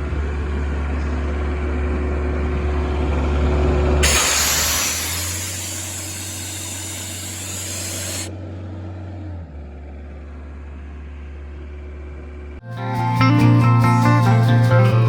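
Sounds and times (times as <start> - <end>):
air compressor engine running: 4.0 - 8.3
air hissing: 4.0 - 8.3.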